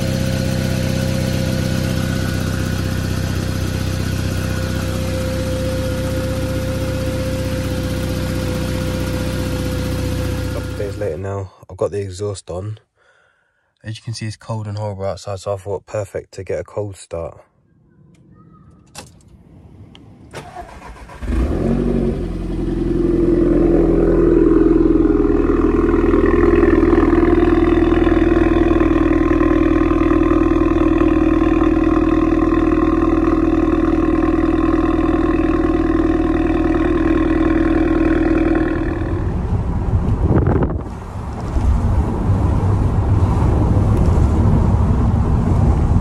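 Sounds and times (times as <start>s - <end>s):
car engine cranking and starting: 0.0s - 11.2s, 18.8s - 46.0s
car engine high idle: 0.0s - 11.2s, 22.1s - 40.8s.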